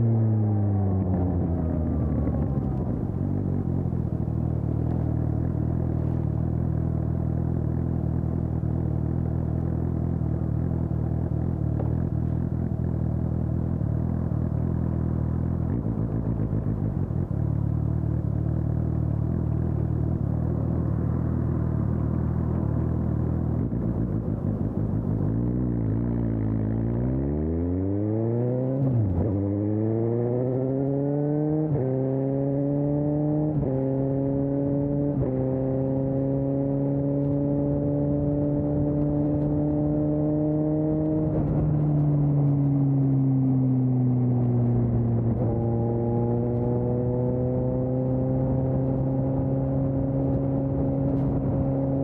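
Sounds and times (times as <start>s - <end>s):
motorcycle revving and pulling away: 0.0s - 52.0s
motorcycle engine idling: 1.2s - 25.6s.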